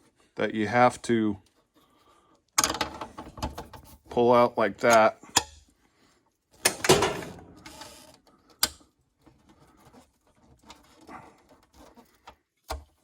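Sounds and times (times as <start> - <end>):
metal hinge and tools clicking: 6.6 - 7.9.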